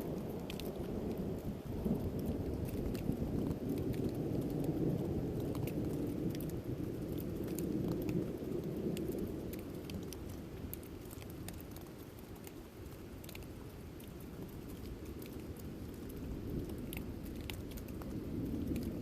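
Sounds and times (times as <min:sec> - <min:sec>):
thunder rumbling: 0:00.0 - 0:10.8, 0:14.8 - 0:19.0
rain drops pattering: 0:00.0 - 0:19.0.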